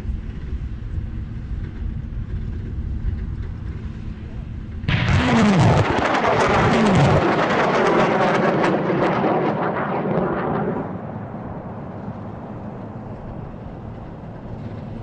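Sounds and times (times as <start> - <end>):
crackling rocket motor roar: 4.9 - 11.7.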